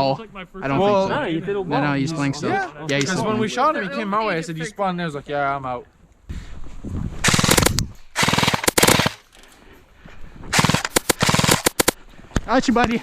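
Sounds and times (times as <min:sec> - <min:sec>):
airsoft gun firing bursts: 0:07.2 - 0:09.3, 0:10.5 - 0:12.0.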